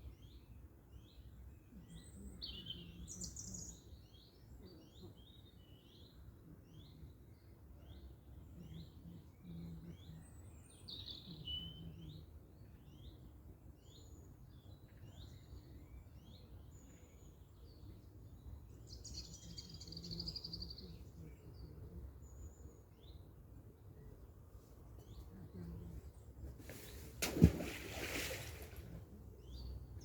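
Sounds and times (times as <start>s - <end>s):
small birds chirping: 0.1s - 13.2s, 13.8s - 23.2s.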